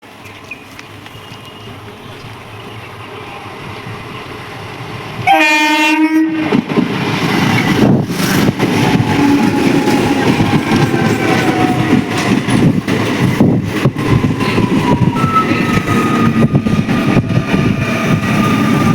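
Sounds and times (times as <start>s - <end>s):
train rumble: 0.0s - 18.9s
train horn blast: 5.2s - 6.6s, 9.1s - 12.3s
wheels clattering over rail joints: 6.5s - 18.8s.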